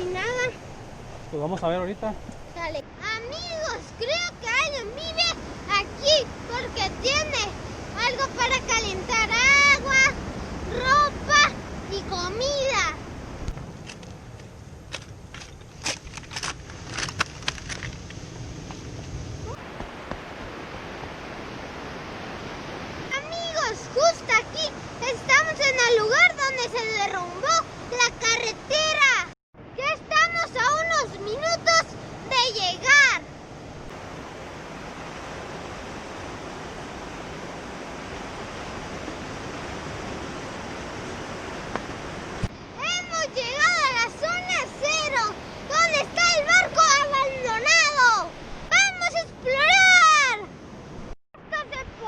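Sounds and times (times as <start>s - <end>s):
ocean waves washing: 0.0s - 52.0s
surf breaking on shore: 0.0s - 52.0s
footsteps on beach rocks: 13.4s - 20.5s, 38.2s - 42.6s.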